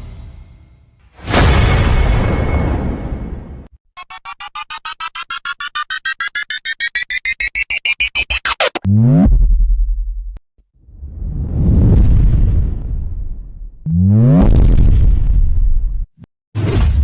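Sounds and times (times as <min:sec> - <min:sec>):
rising pulsing synth beep: 0:04.0 - 0:09.3.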